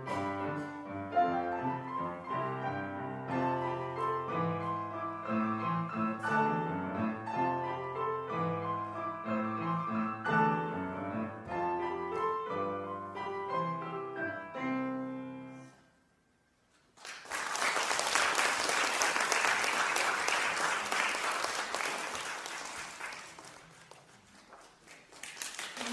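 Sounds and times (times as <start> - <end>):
chamber trio playing classical music: 0.0 - 15.5
audience applauding: 16.9 - 25.9.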